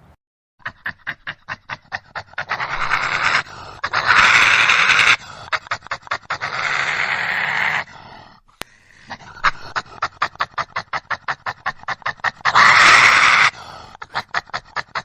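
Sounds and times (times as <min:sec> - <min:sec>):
badger huffing: 0:00.6 - 0:15.0
badger hissing: 0:02.3 - 0:14.2.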